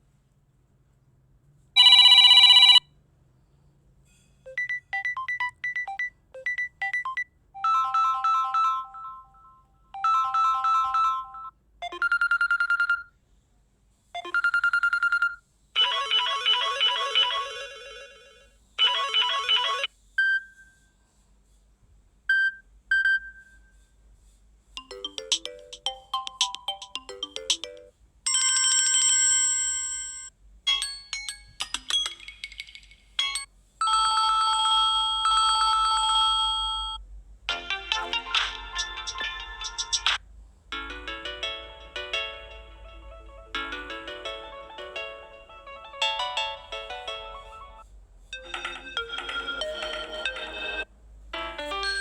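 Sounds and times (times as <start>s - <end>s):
electronic ringtone melodies and chimes: 1.8s - 2.8s, 4.5s - 13.0s, 14.2s - 20.6s, 24.8s - 29.4s, 30.0s - 40.2s, 40.8s - 47.8s, 48.4s - 52.0s.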